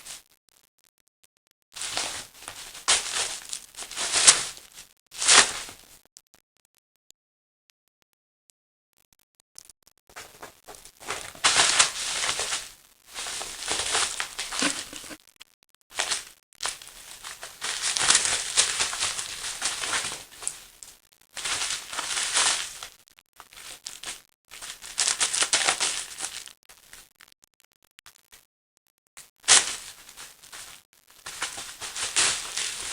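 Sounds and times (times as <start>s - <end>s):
paper bag and bubble wrap crinkling: 0.0s - 0.2s, 1.8s - 6.0s, 10.1s - 15.2s, 15.9s - 27.1s, 29.3s - 32.9s.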